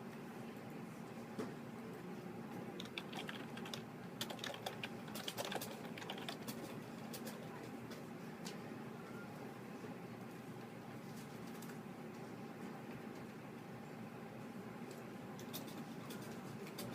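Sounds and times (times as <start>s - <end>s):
low room hum: 0.0s - 16.9s
keyboard typing clicks: 2.8s - 6.6s.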